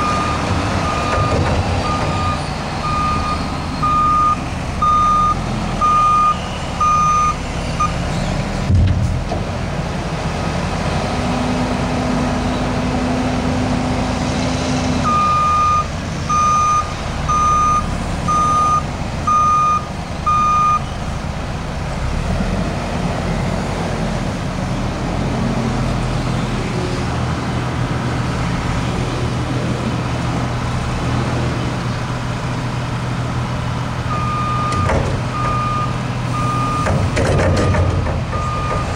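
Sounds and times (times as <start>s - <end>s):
reversing alarm beeping: 0.0s - 8.0s, 15.1s - 20.8s, 34.1s - 37.0s, 37.6s - 38.9s
snow plough engine running: 9.3s - 38.9s.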